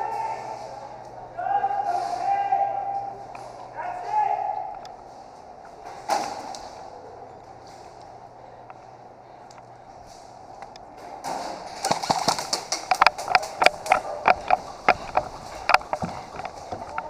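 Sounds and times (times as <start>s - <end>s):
airsoft guns firing: 11.4s - 15.0s.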